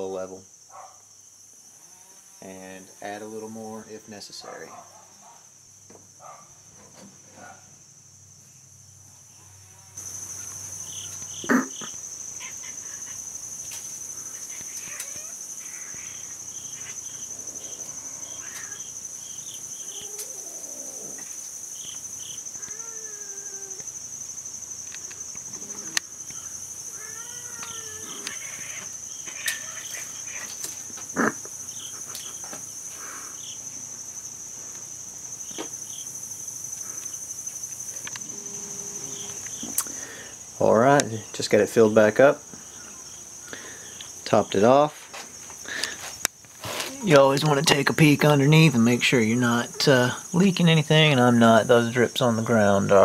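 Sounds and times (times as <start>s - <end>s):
insect chirring: 0.0s - 53.0s
faint gliding calls: 10.1s - 21.4s.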